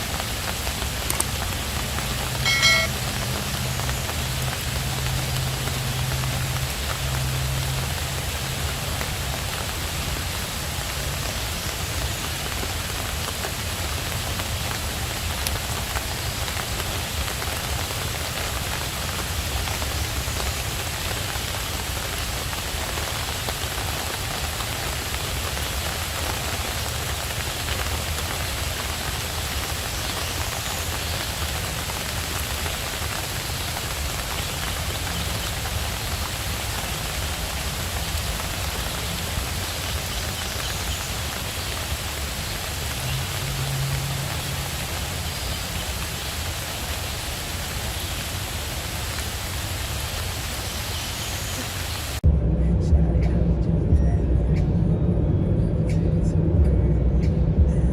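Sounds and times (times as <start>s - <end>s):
steady rain falling: 0.0s - 52.2s
low rumble: 52.2s - 57.9s.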